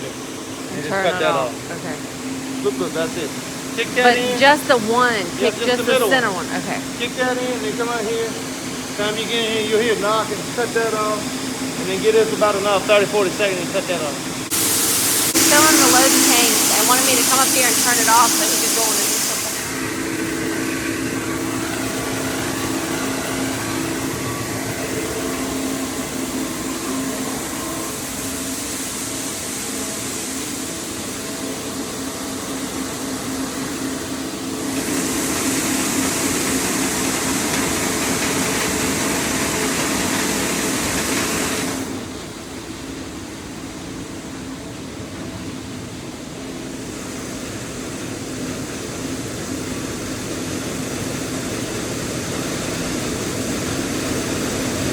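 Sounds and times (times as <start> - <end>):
loud rushing hiss: 0.0 - 42.8
machinery humming: 0.0 - 54.9.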